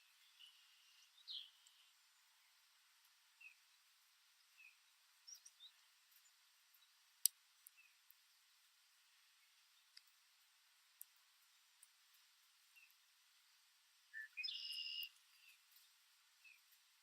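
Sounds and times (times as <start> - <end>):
faint ticks: 0.0 - 3.7, 4.5 - 13.1
short bird chirps: 14.1 - 15.6.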